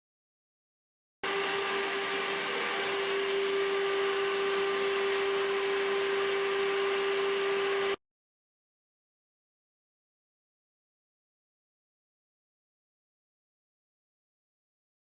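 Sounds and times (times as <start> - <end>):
router machine whine: 1.2 - 8.0.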